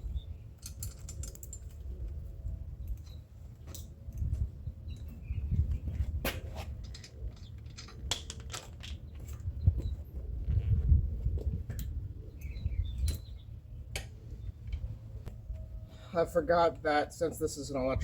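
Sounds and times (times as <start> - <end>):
clicks and knocks of parts handled: 0.6 - 2.2, 6.2 - 9.5.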